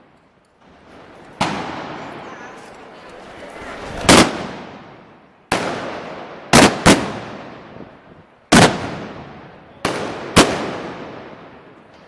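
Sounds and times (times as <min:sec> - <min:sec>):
gunpowder bangs with echo: 0:01.3 - 0:02.7, 0:05.5 - 0:07.6, 0:08.5 - 0:11.4.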